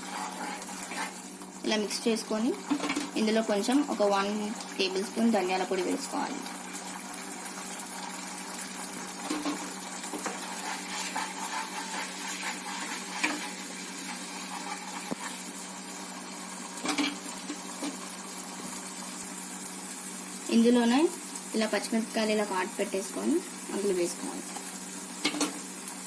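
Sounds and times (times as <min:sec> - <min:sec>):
gravy sizzling: 0:00.0 - 0:26.0
spoon scraping and tapping pan: 0:09.2 - 0:15.4.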